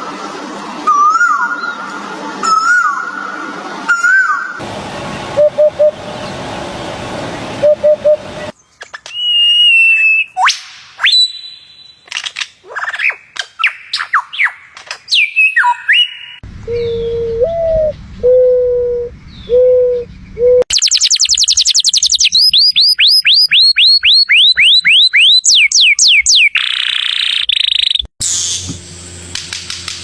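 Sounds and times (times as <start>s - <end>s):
bird whistles and chirps: 0.9s - 1.8s, 2.4s - 3.2s, 3.9s - 4.6s, 9.0s - 12.0s, 12.8s - 18.5s, 19.3s - 28.7s
quick falling whistles: 9.1s - 12.0s
fast high bird trill: 20.7s - 27.3s.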